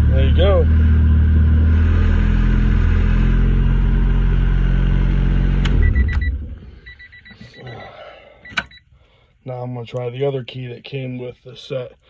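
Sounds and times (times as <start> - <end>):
car engine idling: 0.0 - 7.2
rapid reminder beeps: 5.8 - 7.9
ignition key clicks: 8.4 - 8.8.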